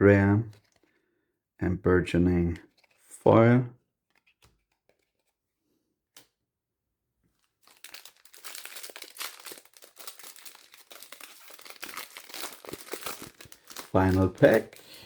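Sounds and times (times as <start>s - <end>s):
foil wrapper crinkling: 7.4s - 15.0s.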